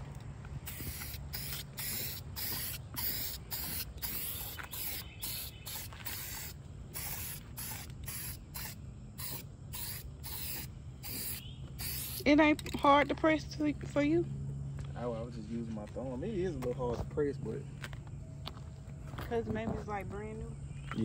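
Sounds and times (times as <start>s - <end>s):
spray can hissing: 0.6s - 12.4s.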